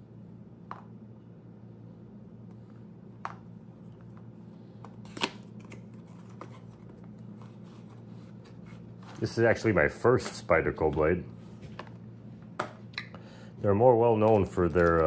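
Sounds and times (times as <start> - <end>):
low steady hum: 0.0 - 15.0
knife packaging clicks and rustles: 14.2 - 15.0.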